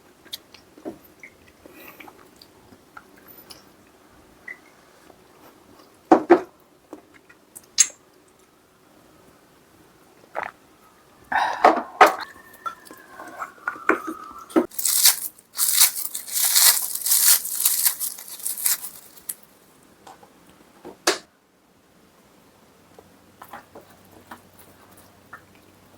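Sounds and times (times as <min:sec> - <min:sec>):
loud crunching and chewing: 0:14.7 - 0:19.4.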